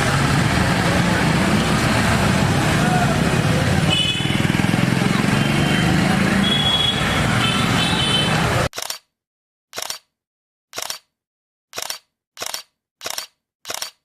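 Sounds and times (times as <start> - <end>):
street traffic noise: 0.0 - 9.0
shutter-like click: 9.8 - 10.1, 10.8 - 11.1, 11.8 - 14.0.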